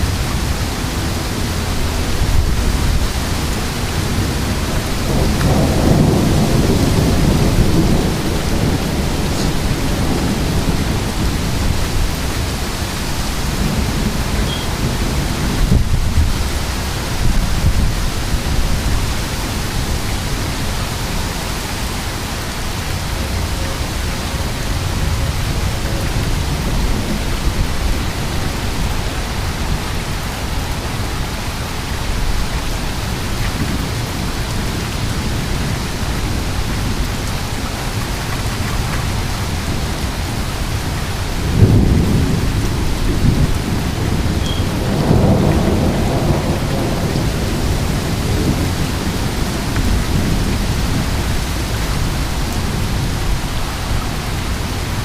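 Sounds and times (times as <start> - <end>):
heavy rain falling: 0.0 - 55.0
rolling thunder: 0.0 - 55.0
thunder crack: 2.2 - 12.3, 41.4 - 51.7.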